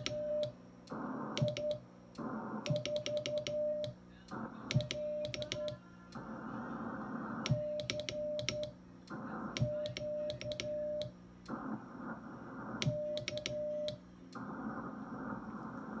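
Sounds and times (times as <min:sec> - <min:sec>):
radio receiver hiss: 0:09.1 - 0:16.0.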